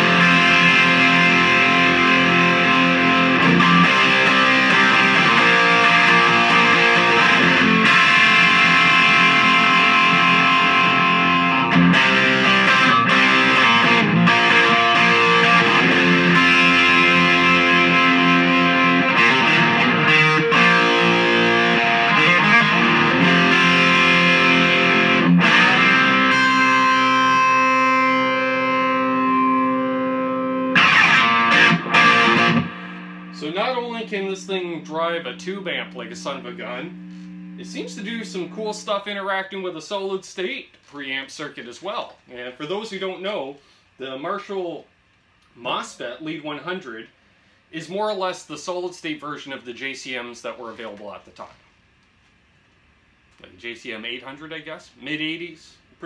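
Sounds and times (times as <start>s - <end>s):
distorted electric guitar riffs: 0.0s - 39.6s.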